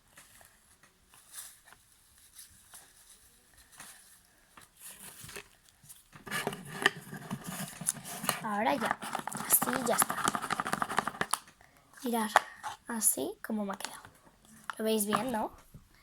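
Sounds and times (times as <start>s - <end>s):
hands rubbing and scraping: 6.2s - 11.4s, 14.6s - 15.5s.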